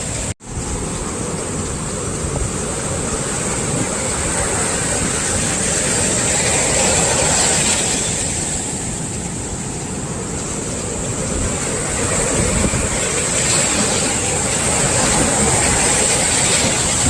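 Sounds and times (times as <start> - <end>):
waves breaking on shore: 0.0 - 17.0.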